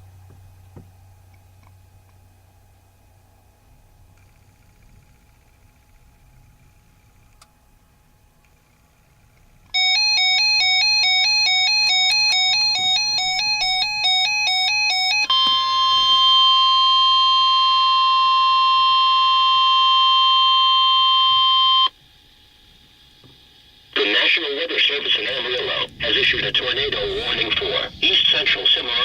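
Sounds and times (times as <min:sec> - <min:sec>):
shrill single alert tone: 0:09.8 - 0:21.9
rapidly alternating electronic data tones: 0:09.8 - 0:29.0.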